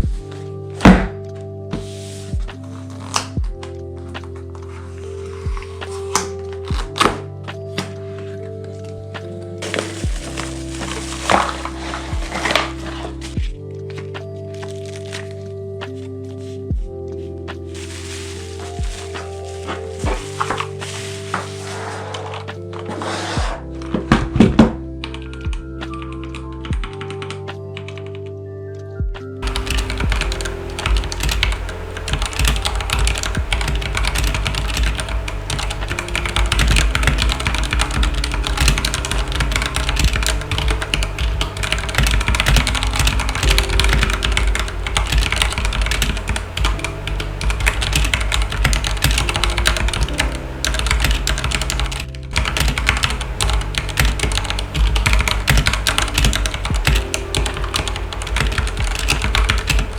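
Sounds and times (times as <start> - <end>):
background music: 0.0 - 59.9
mechanical keyboard typing: 9.6 - 13.2, 29.4 - 59.9.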